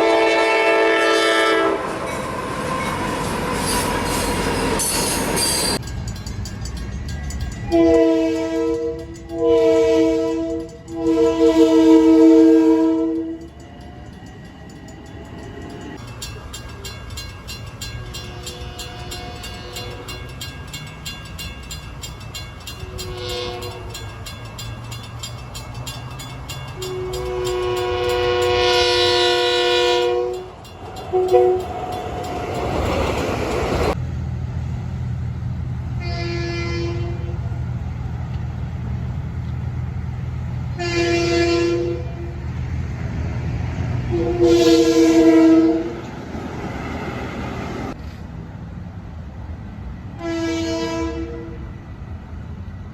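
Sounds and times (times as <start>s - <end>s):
locomotive air horn blasts: 0.0s - 2.0s, 7.7s - 13.5s, 22.8s - 24.0s, 26.8s - 31.7s, 36.0s - 37.5s, 40.7s - 42.4s, 44.1s - 46.0s, 50.2s - 51.7s
train rumble: 0.0s - 52.9s.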